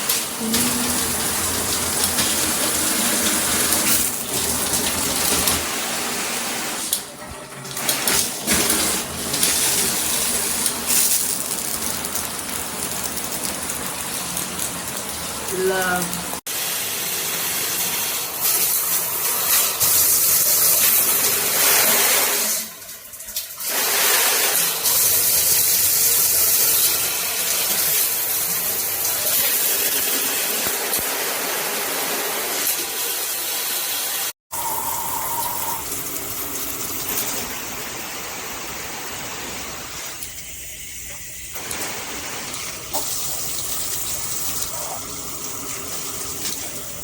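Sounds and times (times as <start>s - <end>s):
shower head spraying water: 0.0s - 16.7s, 34.5s - 47.0s.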